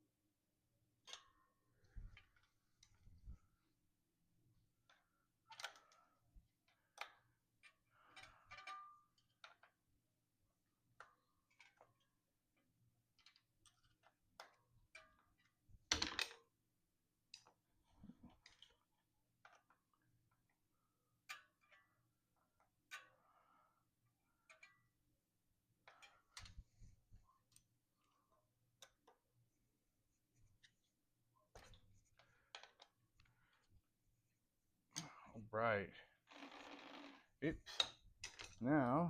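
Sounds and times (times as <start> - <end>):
small clicks and metal clinks: 1.0 - 3.6, 4.6 - 16.6, 17.2 - 25.1, 25.7 - 29.5, 30.5 - 33.7, 37.5 - 39.0.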